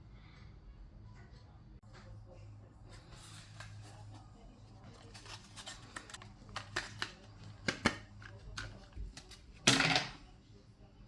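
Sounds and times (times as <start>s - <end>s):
parts and packaging clicking: 5.1s - 10.2s.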